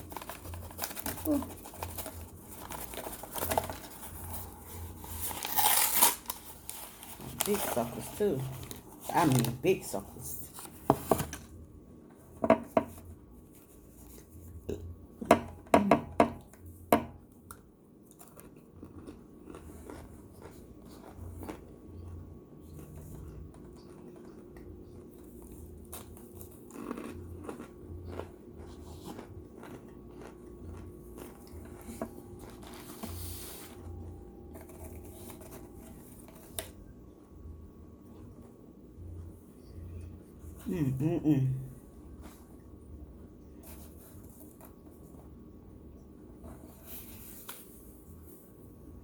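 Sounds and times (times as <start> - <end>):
person chewing: 17.4 - 34.0.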